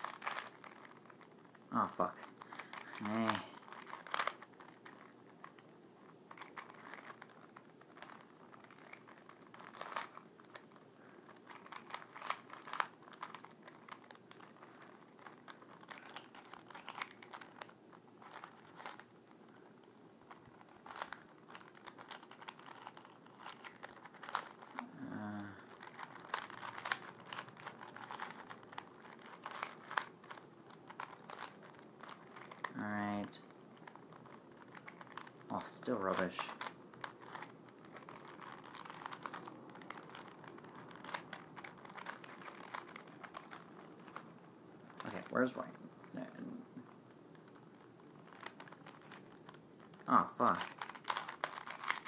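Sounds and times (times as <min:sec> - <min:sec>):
plastic puzzle cube clicking: 0:00.0 - 0:01.6, 0:02.3 - 0:19.1, 0:20.3 - 0:45.3, 0:46.9 - 0:52.0.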